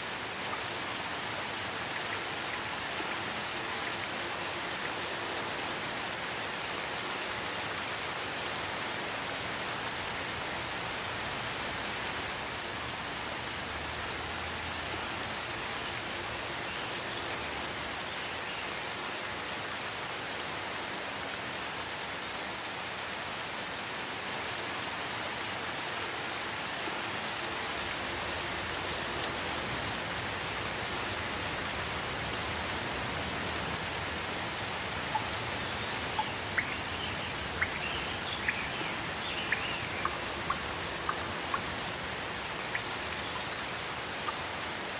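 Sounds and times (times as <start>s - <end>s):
steady rain hissing: 0.0s - 44.9s.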